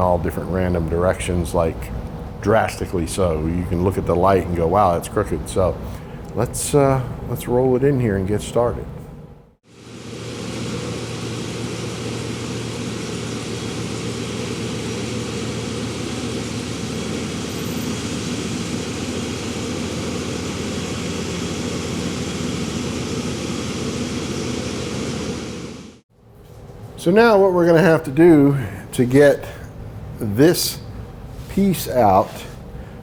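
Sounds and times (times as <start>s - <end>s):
car engine running at low speed: 9.8s - 26.0s.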